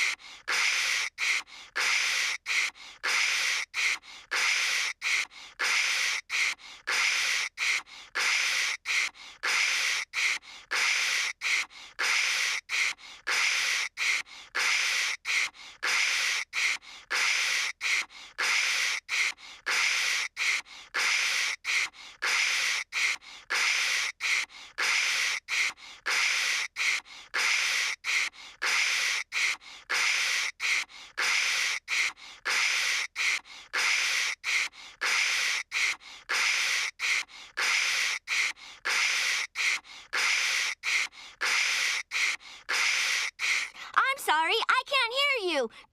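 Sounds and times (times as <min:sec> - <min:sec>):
voice imitating static: 0:43.4 - 0:45.7.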